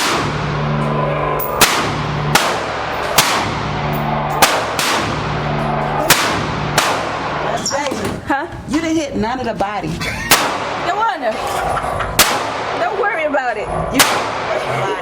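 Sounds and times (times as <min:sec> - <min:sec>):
gunshots with echo: 0:00.0 - 0:00.8, 0:01.5 - 0:07.6, 0:10.3 - 0:11.0, 0:12.1 - 0:13.0, 0:14.0 - 0:14.8.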